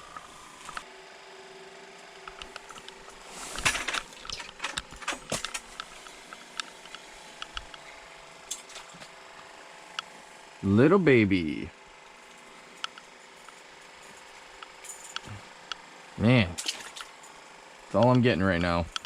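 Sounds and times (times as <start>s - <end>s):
fishing gear clicks and knocks: 2.4s - 7.8s.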